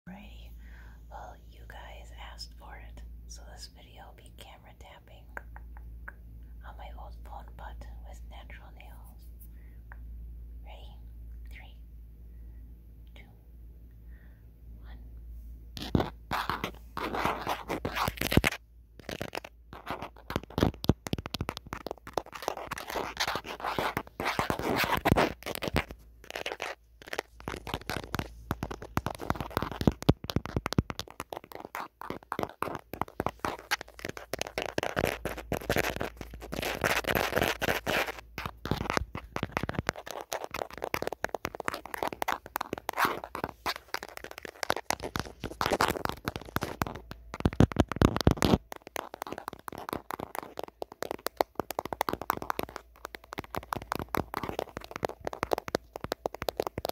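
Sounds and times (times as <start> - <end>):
fingernails scratching: 15.8 - 56.9
fingernails tapping on phone: 27.1 - 56.9.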